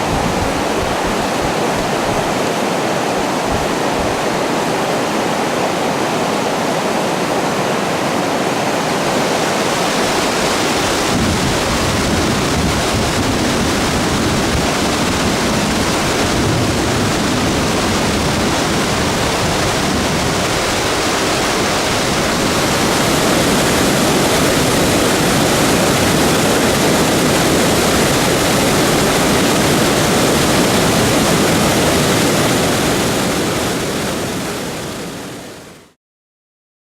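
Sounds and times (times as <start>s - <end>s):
waterfall and stream rushing: 0.0s - 36.0s.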